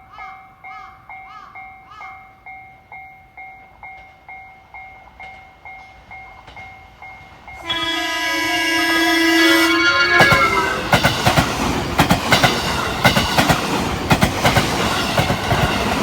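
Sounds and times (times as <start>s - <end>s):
level-crossing warning bell: 0.5s - 16.0s
train horn: 7.6s - 11.7s.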